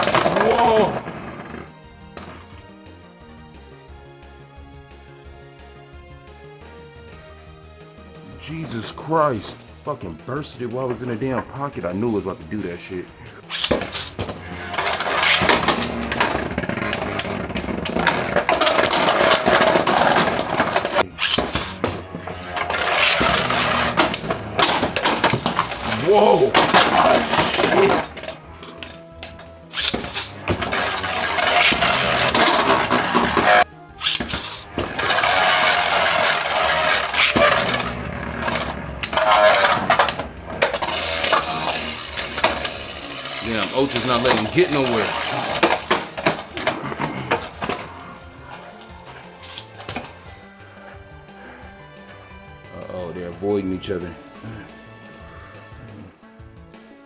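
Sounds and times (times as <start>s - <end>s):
spinning tops whirring and clattering: 0.0s - 2.6s, 13.4s - 50.5s.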